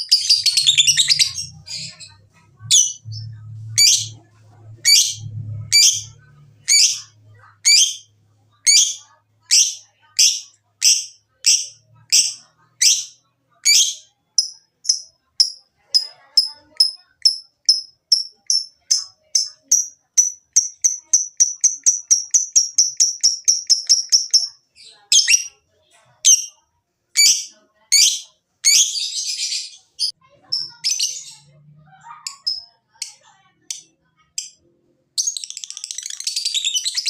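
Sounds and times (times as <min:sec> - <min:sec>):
lovebird harsh chirps: 0:00.0 - 0:04.2, 0:04.8 - 0:08.1, 0:08.7 - 0:25.5, 0:35.2 - 0:37.0.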